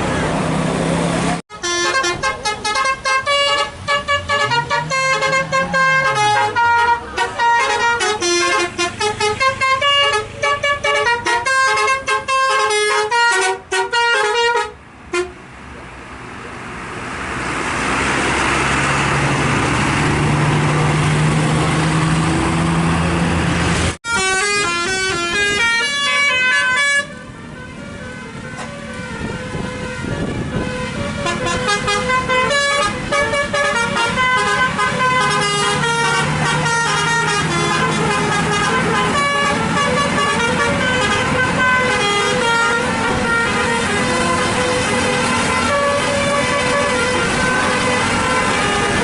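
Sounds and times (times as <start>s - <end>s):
bus engine running: 0.0s - 49.0s
multi-tone air horn melody: 1.5s - 15.4s, 24.0s - 49.0s.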